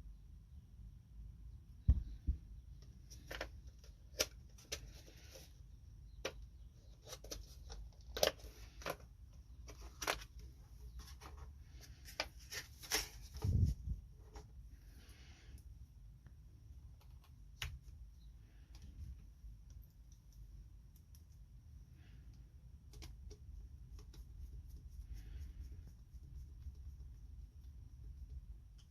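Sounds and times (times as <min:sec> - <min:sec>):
low thump: 0:01.8 - 0:02.4.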